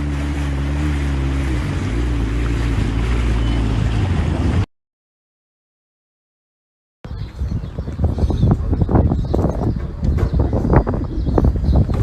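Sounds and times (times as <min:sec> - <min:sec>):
motorboat engine running: 0:00.0 - 0:04.7, 0:07.6 - 0:12.0.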